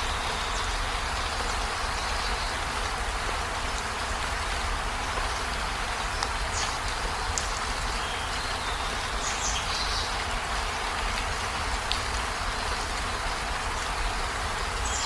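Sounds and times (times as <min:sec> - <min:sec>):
rain falling on a river: 0:00.0 - 0:15.0.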